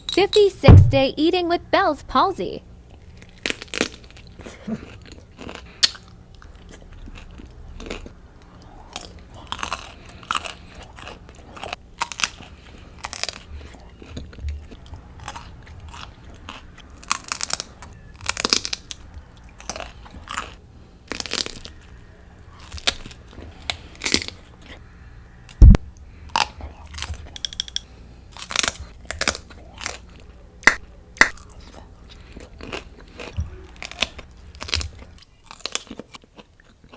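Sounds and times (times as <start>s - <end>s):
heavy thump: 0.7s - 1.1s
crunchy broccoli chewing: 2.9s - 24.8s, 25.6s - 36.9s.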